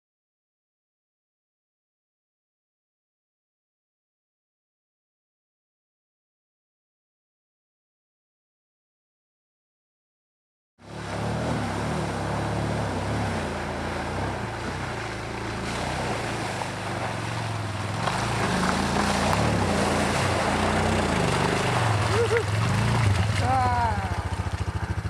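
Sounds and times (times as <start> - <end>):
vehicle engine droning: 10.8 - 25.0.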